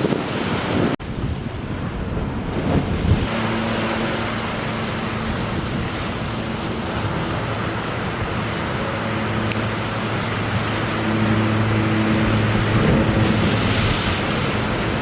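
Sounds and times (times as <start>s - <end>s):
ocean surf washing: 0.0s - 15.0s
wind buffeting microphone: 0.0s - 15.0s.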